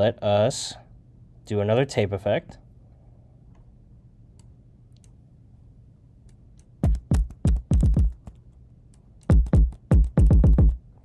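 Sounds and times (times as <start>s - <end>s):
synthesized kick drum hits: 6.8s - 8.3s, 9.3s - 10.8s.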